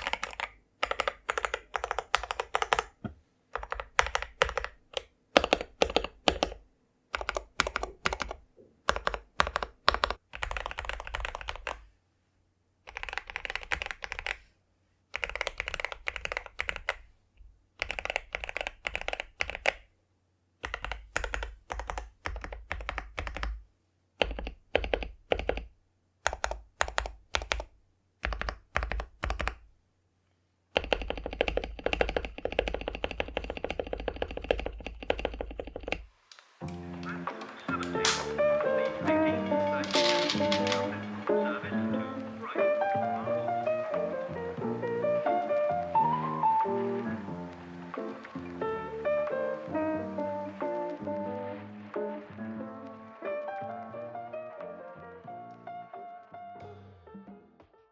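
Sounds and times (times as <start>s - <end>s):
typing on mechanical keyboard: 0.0s - 11.8s, 12.8s - 14.4s, 15.1s - 17.0s, 17.8s - 19.9s, 20.6s - 23.6s, 24.2s - 29.6s, 30.7s - 36.5s, 37.8s - 41.0s.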